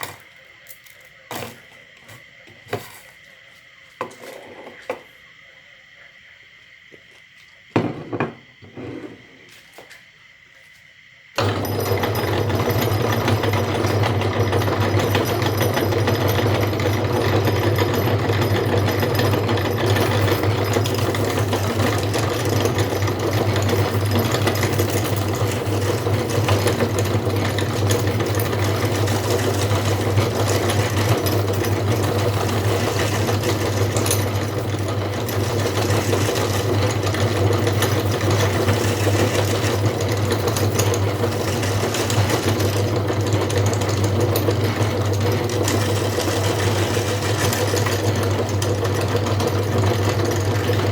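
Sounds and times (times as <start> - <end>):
electric meat grinder running: 11.4 - 50.9.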